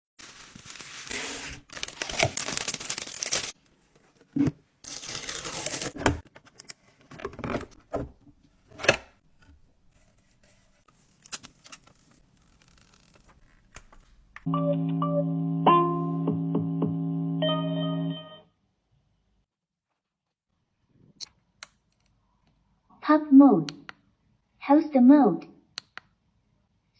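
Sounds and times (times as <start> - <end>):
packaging tearing: 0.2 - 3.6, 4.8 - 6.0, 11.2 - 13.4
keyboard music: 14.5 - 18.5.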